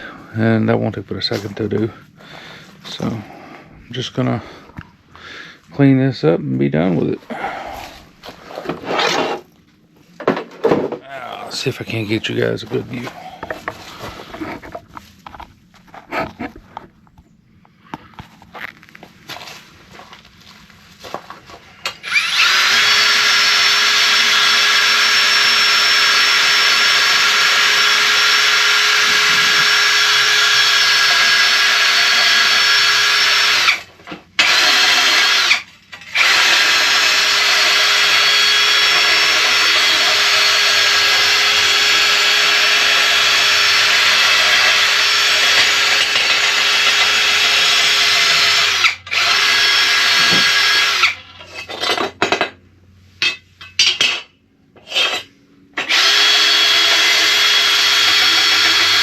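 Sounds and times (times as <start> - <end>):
power tool whining: 21.8 - 51.9, 54.8 - 59.0.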